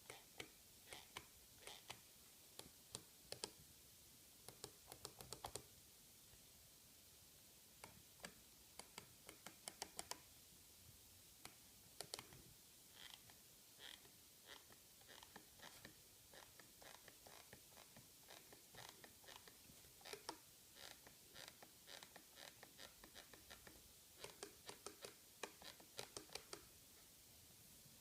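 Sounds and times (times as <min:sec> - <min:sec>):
mouse shell creaking: 0:00.0 - 0:02.0, 0:12.0 - 0:26.7.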